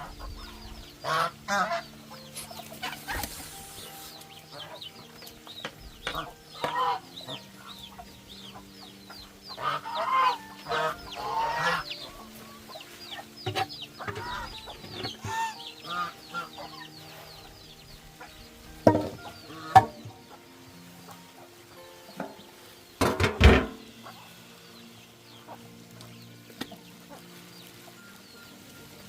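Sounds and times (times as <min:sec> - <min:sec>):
chickens clucking: 0:00.0 - 0:29.0.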